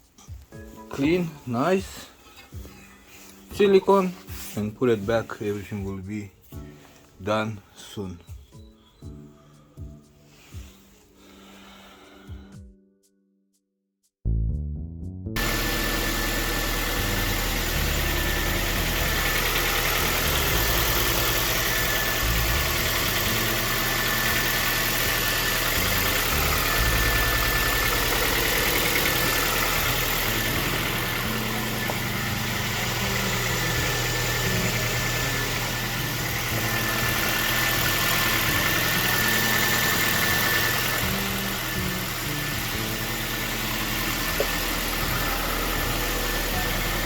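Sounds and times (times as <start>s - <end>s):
car engine idling: 15.4s - 47.0s.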